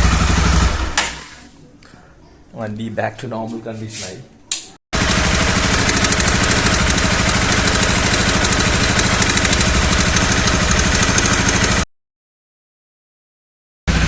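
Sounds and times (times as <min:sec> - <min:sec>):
motorcycle engine idling: 0:05.0 - 0:11.8.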